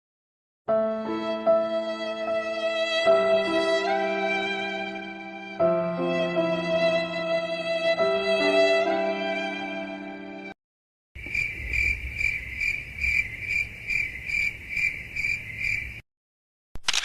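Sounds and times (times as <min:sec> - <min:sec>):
sad violin tune: 0:00.7 - 0:10.6
crickets chirping: 0:11.2 - 0:16.0.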